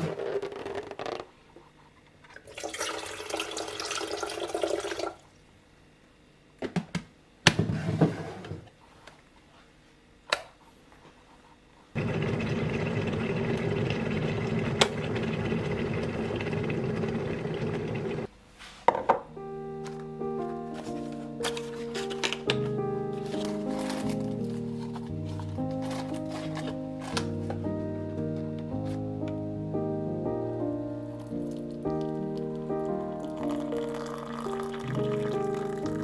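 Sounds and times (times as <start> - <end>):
water running into vessel: 2.4 - 5.2, 12.0 - 18.3, 32.9 - 36.0.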